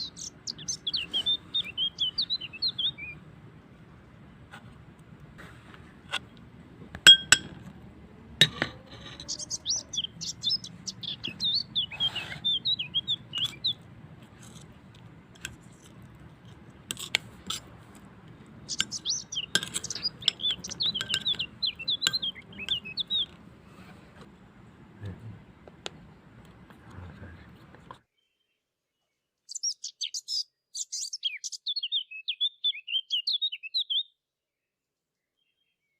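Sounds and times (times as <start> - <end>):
songbird warbling chirps: 0.0 - 3.2, 8.8 - 14.6, 18.5 - 23.4, 28.1 - 34.2, 35.2 - 35.9
sharp clinks: 7.1 - 7.6.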